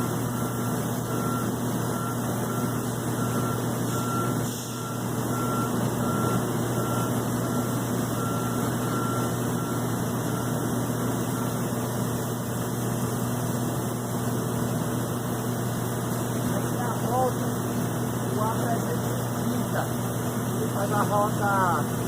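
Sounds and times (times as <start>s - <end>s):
low mechanical hum: 0.0s - 22.0s
reversing beeper: 0.3s - 11.7s.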